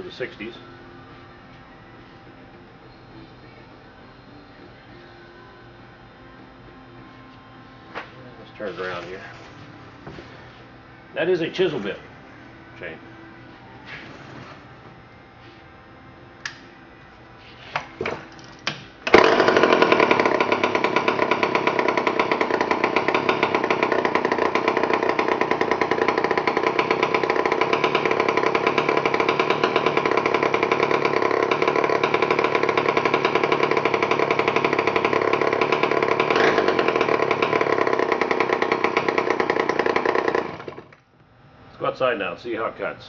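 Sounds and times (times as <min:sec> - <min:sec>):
chainsaw starting and running: 0:19.1 - 0:41.0.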